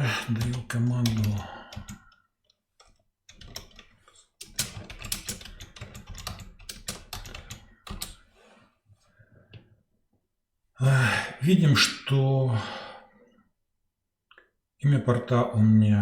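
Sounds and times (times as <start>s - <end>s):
typing on computer keyboard: 0.2s - 2.2s, 2.8s - 8.2s.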